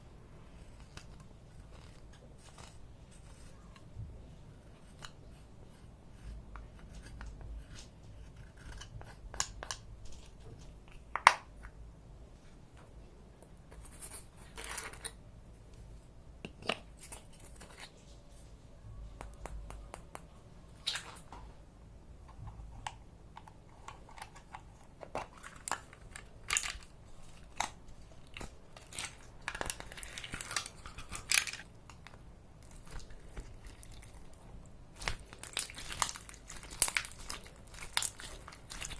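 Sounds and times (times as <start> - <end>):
packaging crinkling: 23.9 - 38.9.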